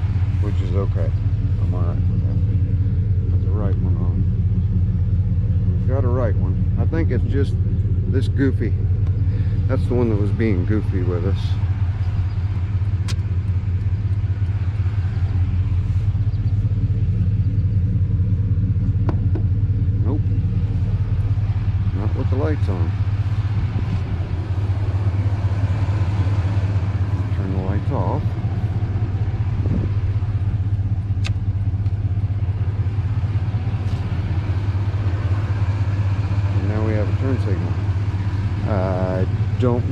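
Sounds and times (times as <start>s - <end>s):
motorcycle engine idling: 0.0s - 39.9s
sharp click: 13.0s - 13.3s, 31.2s - 32.0s.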